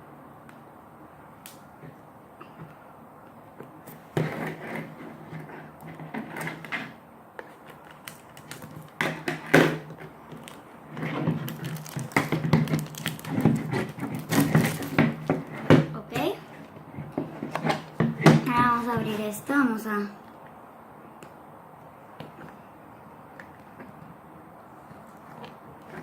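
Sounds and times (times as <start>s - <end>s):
plastic wrapper crinkling: 7.5s - 9.2s, 9.9s - 15.5s.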